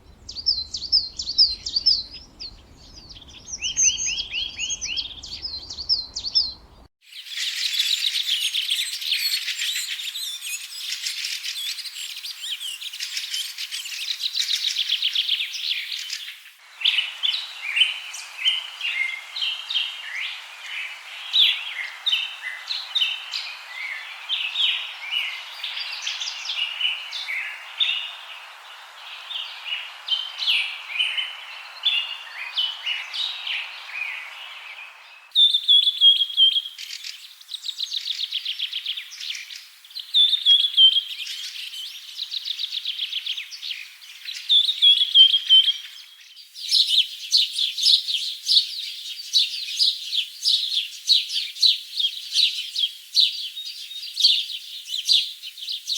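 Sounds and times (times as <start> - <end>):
steady hiss: 0.0 - 6.9, 15.6 - 35.3
fast rattling bird trills: 0.0 - 8.2
small birds chirping and trilling: 0.0 - 55.9.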